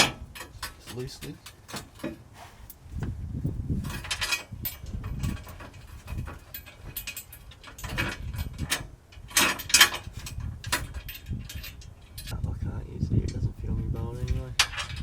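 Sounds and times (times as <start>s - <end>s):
tools clanking on steel plate: 0.0s - 2.8s, 3.8s - 12.3s, 14.0s - 15.0s.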